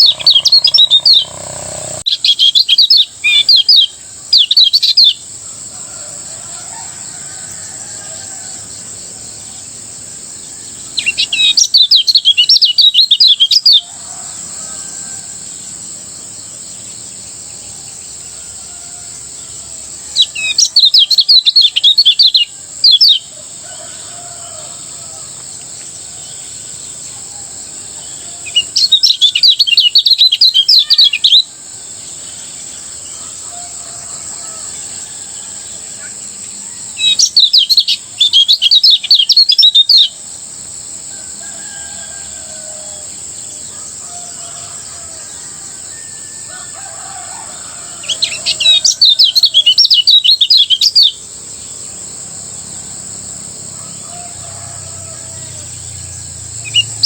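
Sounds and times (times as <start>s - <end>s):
bird chirping song: 0.0s - 40.4s, 41.4s - 57.0s
high insect drone: 0.0s - 57.0s.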